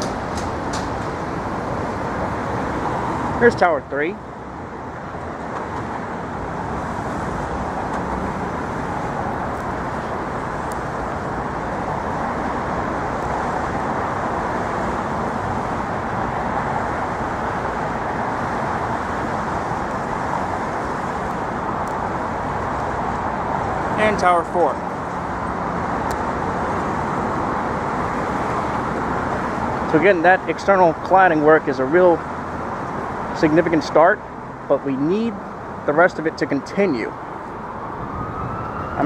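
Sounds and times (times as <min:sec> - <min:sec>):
city street traffic: 0:00.0 - 0:39.0.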